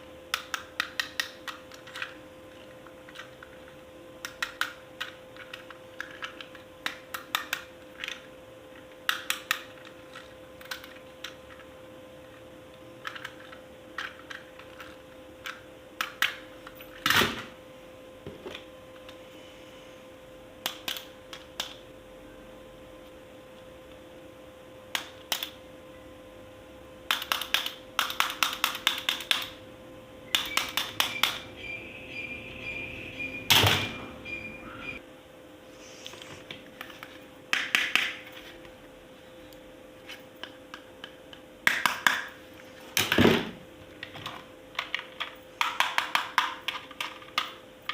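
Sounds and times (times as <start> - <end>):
faint steady hum: 0.0 - 47.9.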